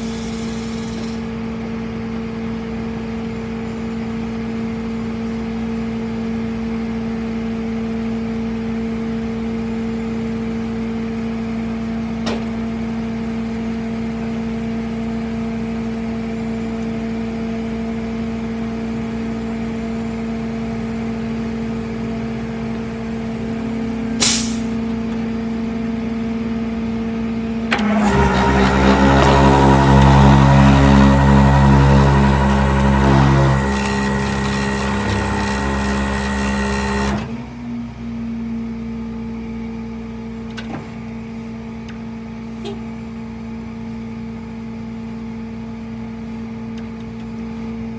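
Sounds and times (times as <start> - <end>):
air hiss: 24.2 - 24.8
vehicle mechanical drone: 27.4 - 38.1.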